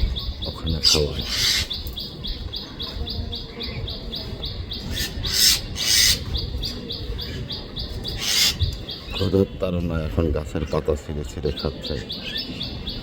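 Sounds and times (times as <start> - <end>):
birds chirping: 0.0 - 13.0
harsh bird calls: 0.0 - 13.0.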